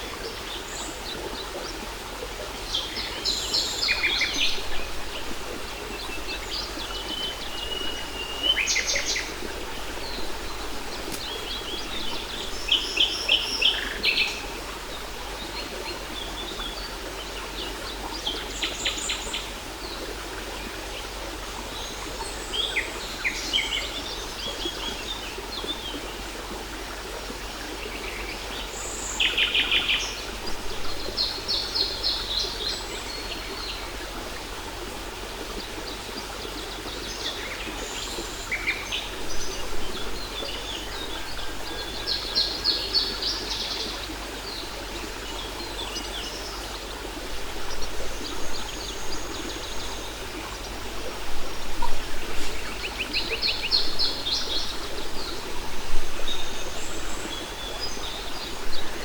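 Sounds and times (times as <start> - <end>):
birds singing: 2.6 - 19.5.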